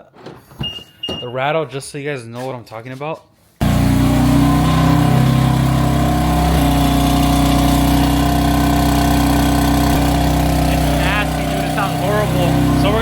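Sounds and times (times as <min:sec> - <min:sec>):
car engine idling: 0:03.6 - 0:13.0
exhaust rattle: 0:03.6 - 0:13.0.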